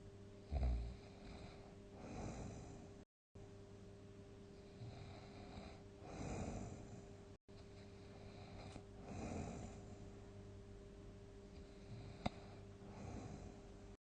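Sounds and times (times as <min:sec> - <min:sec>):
faint steady hum: 0:00.0 - 0:14.0
person snoring: 0:00.5 - 0:02.9, 0:04.6 - 0:07.1, 0:07.8 - 0:10.0, 0:11.6 - 0:13.7.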